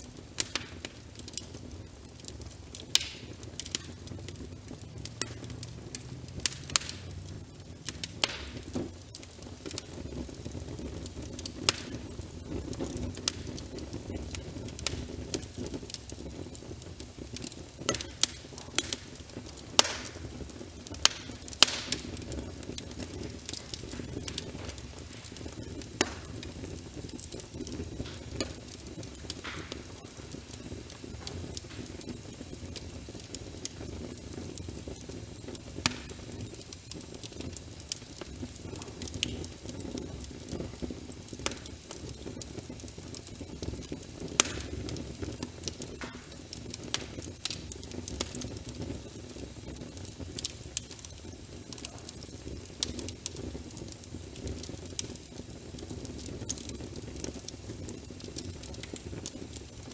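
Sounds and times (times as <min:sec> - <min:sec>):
wood fire crackling and popping: 0:00.0 - 0:59.9
rain rushing: 0:02.9 - 0:10.3, 0:18.0 - 0:33.6.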